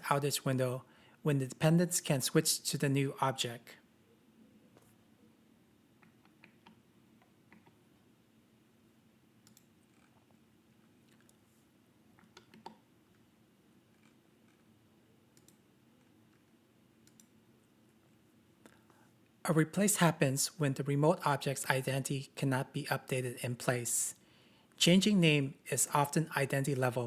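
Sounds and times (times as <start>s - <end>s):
soft clicks: 9.4s - 10.4s, 15.3s - 17.4s.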